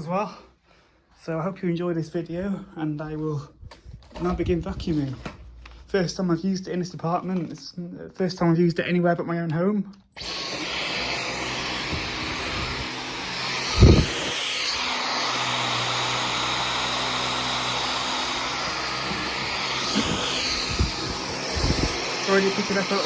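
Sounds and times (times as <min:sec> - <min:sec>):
cordless vacuum running: 0:10.2 - 0:23.0.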